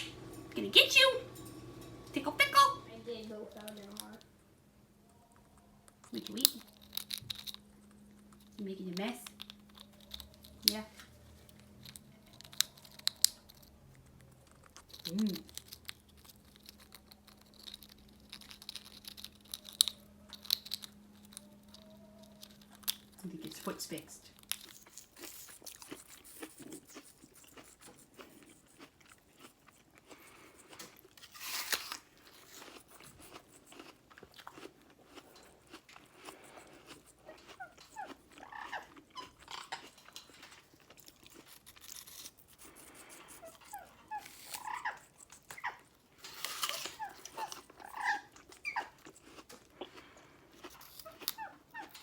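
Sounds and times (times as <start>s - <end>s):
parrot crunching food: 0.0s - 52.0s.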